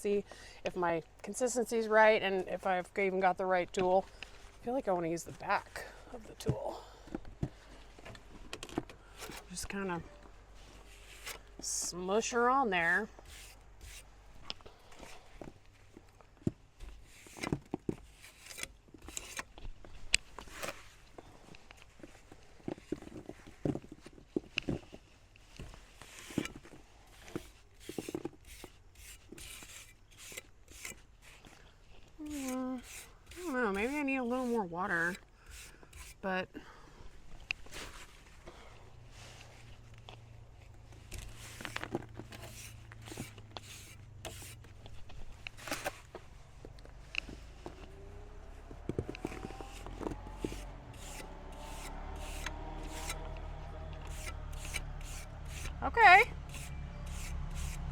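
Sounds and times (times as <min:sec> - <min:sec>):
hand tool scraping wet mortar: 0:10.8 - 0:14.2, 0:16.9 - 0:19.6, 0:26.2 - 0:36.3, 0:41.1 - 0:46.0, 0:49.2 - 0:53.4, 0:54.0 - 0:57.9
trowel scraping wet mix: 0:32.2 - 0:36.2, 0:41.2 - 0:44.6, 0:50.4 - 0:53.3, 0:54.0 - 0:55.8.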